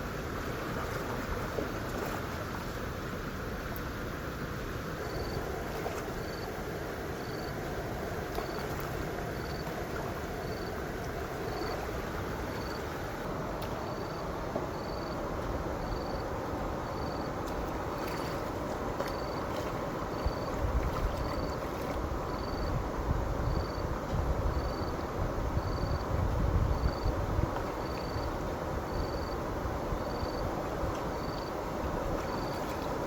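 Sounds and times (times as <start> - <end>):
faint high insect chirp: 0.0 - 33.0
wind noise: 7.3 - 33.0
wind gusts buffeting microphone: 14.6 - 33.0.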